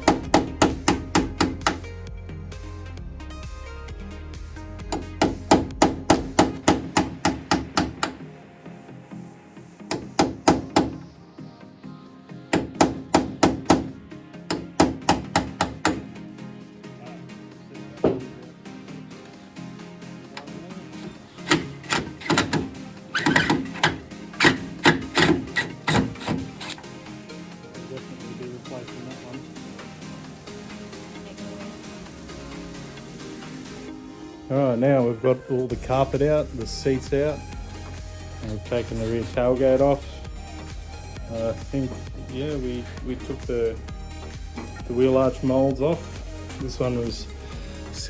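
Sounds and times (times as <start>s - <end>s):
sharp knocks: 0.0s - 1.8s, 4.9s - 8.2s, 9.9s - 11.0s, 12.6s - 16.1s, 21.0s - 26.8s
background music: 0.0s - 48.0s
hammer blows: 21.0s - 26.8s.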